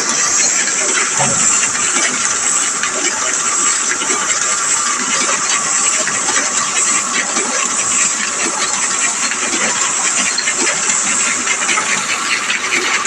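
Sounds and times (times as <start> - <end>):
printing press clattering: 1.2 - 3.0.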